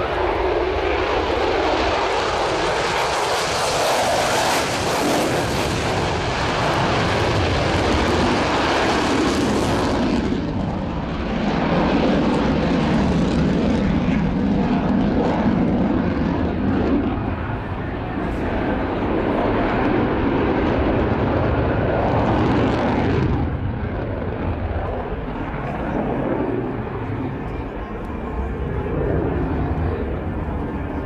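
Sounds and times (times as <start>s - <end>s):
fighter jet flying past: 0.0s - 31.0s.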